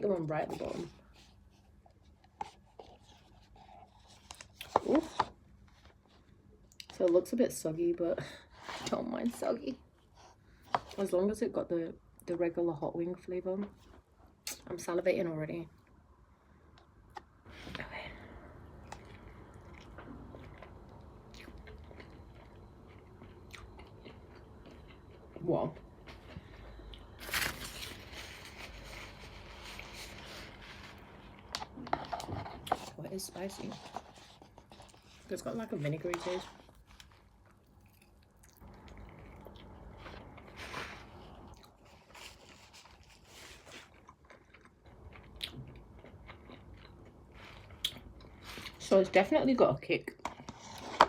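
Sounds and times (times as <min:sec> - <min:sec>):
chewing crunchy chicken wing: 0:18.9 - 0:25.4, 0:36.2 - 0:48.8
wet chewing: 0:28.9 - 0:48.8.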